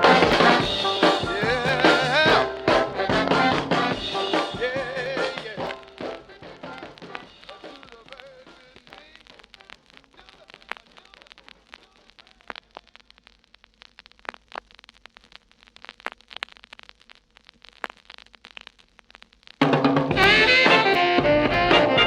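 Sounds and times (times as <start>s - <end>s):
song playing: 0.0s - 8.1s, 19.6s - 22.0s
faint vinyl crackle: 0.0s - 22.0s
vinyl clicks and pops: 0.0s - 22.0s.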